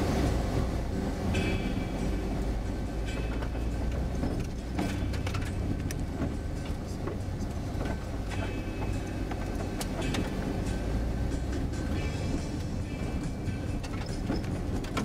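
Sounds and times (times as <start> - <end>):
car engine running: 0.0 - 15.0
light clicks and rattles: 3.0 - 15.0.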